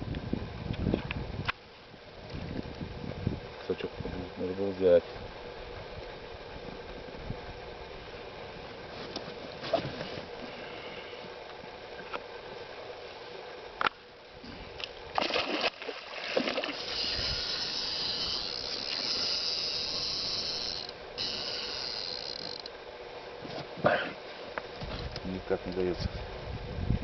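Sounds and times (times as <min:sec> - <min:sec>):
fishing reel ratcheting whir: 0:16.6 - 0:22.8.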